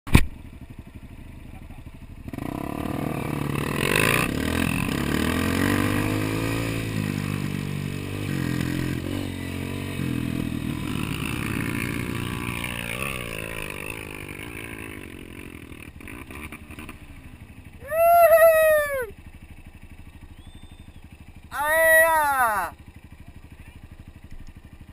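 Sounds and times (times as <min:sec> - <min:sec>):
motorcycle engine revving: 0:00.2 - 0:24.9
high rising-and-falling call: 0:17.8 - 0:19.2, 0:20.2 - 0:22.8.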